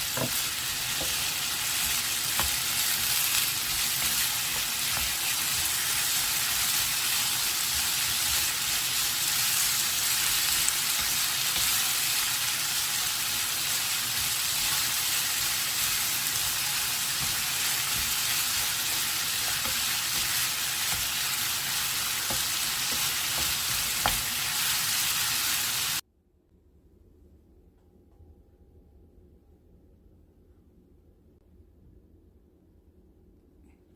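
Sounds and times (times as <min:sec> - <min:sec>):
potatoes sizzling in a pan: 0:00.0 - 0:26.0.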